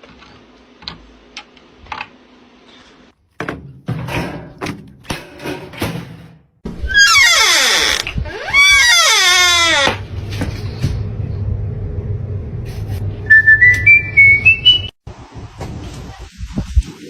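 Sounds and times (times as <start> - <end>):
steady low hum: 10.0 - 13.3
person whistling high tone: 13.3 - 14.9.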